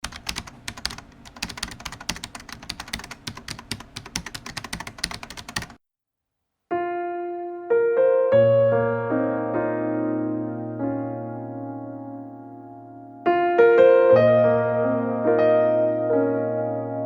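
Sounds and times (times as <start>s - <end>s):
keyboard typing: 0.0s - 5.8s
piano chords stepping upward: 6.7s - 17.0s.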